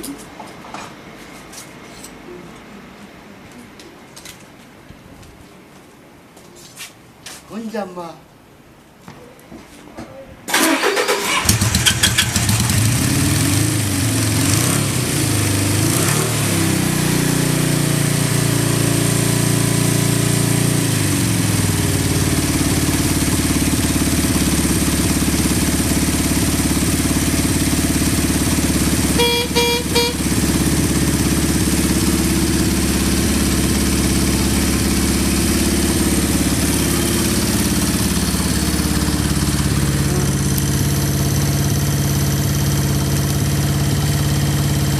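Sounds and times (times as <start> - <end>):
motorcycle engine idling: 11.4 - 15.9, 19.2 - 44.9
horn beeping: 27.0 - 33.3.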